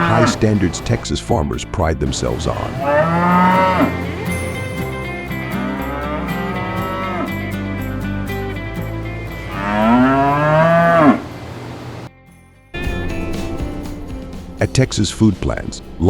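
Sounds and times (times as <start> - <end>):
cattle mooing: 0.0 - 1.0, 2.3 - 4.5, 5.3 - 7.7, 9.4 - 12.0
soft background music: 0.0 - 16.0.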